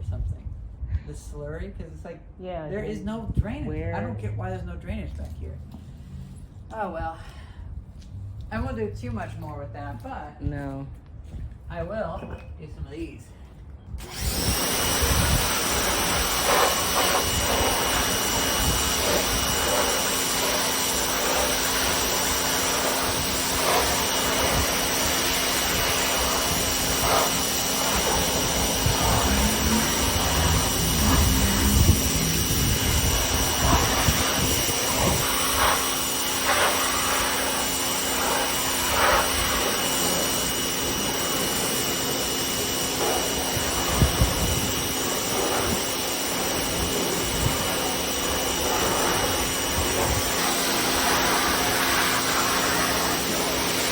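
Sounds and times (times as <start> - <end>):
pressure washer spraying: 14.0 - 53.9.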